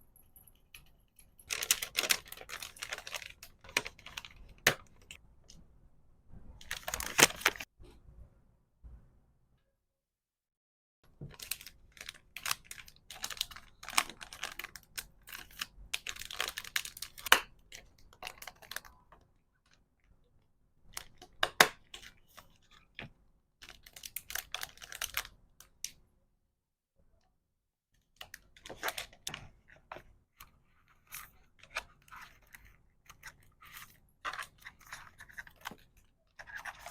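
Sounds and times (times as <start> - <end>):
plastic packaging clicking and crinkling: 1.4 - 5.2, 6.6 - 7.7, 11.2 - 19.8, 20.9 - 26.0, 28.2 - 36.9.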